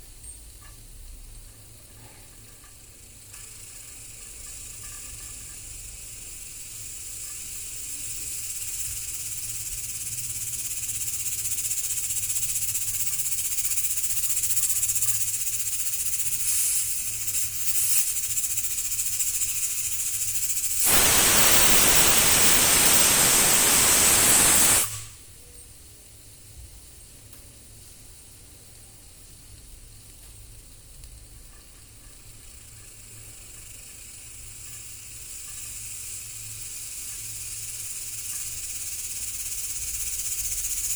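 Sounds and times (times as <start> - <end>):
pressure cooker steam hissing: 16.3 - 25.3.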